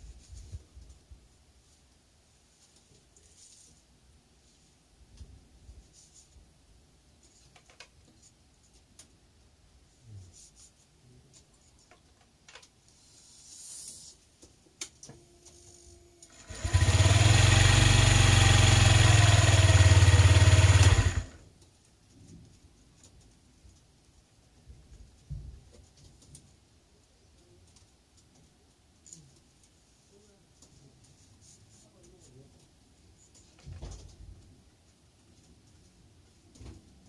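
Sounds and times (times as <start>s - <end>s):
scooter engine running: 16.2s - 21.4s.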